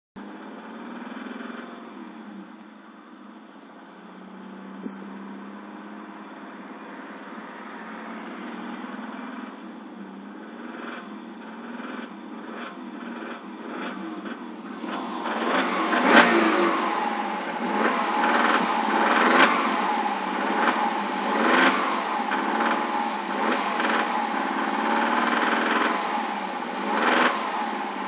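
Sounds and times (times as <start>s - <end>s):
engine knocking: 0.2s - 2.0s, 10.4s - 28.0s
car engine revving: 0.2s - 28.0s.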